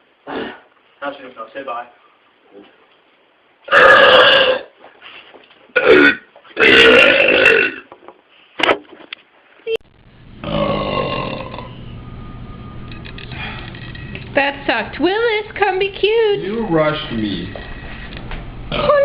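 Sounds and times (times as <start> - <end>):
man burping loudly: 3.7 - 4.7, 5.8 - 7.9, 10.4 - 11.8.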